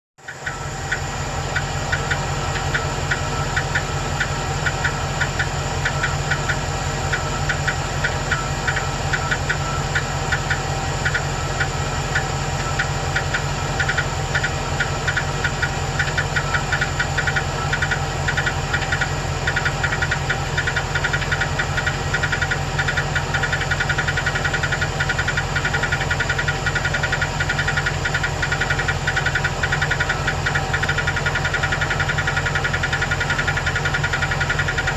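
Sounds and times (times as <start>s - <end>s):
engine idling: 0.2s - 34.9s
light engine ticking: 0.2s - 34.9s.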